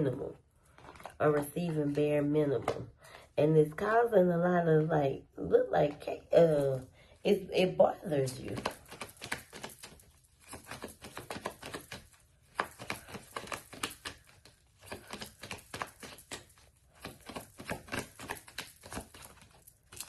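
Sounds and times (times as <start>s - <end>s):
cards being shuffled: 8.3s - 20.0s.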